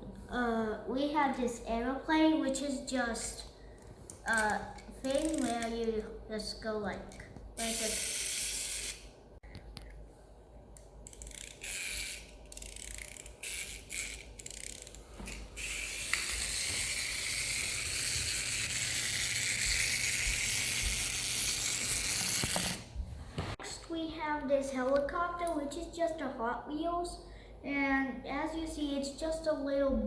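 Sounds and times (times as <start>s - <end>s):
plastic toy mechanism clicking: 4.1s - 5.7s, 11.0s - 22.8s.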